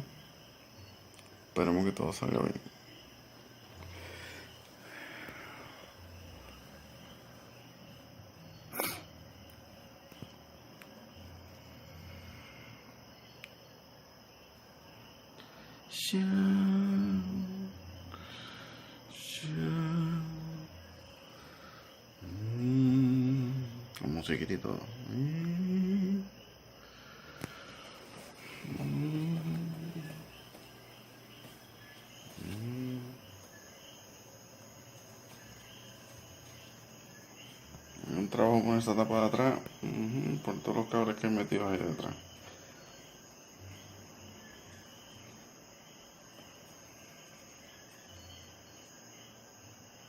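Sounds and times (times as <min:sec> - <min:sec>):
faint cricket chirping: 0:00.0 - 0:50.0
thin high whine: 0:27.5 - 0:33.4
person humming low note: 0:32.4 - 0:33.3.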